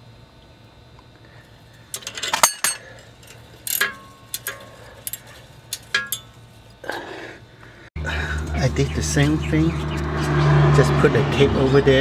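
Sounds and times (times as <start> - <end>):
metal tools clicking and clinking: 1.9 - 6.8.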